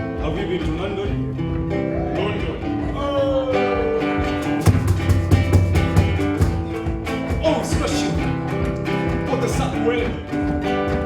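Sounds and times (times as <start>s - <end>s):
acoustic guitar playing: 0.0s - 11.0s
deep beat: 4.2s - 11.0s.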